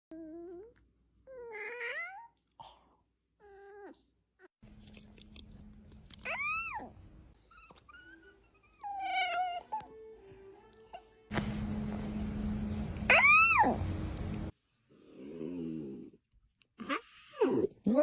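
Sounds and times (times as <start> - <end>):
puppies whining squeakily: 6.2 - 9.9, 13.1 - 13.8.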